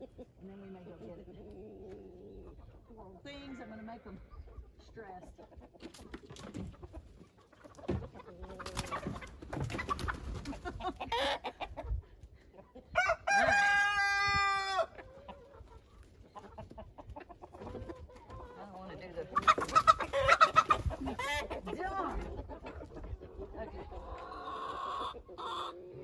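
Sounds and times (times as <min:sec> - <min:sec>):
chickens clucking: 0:00.0 - 0:26.0
chickens squawking: 0:00.0 - 0:26.0
rooster crowing: 0:13.0 - 0:14.9.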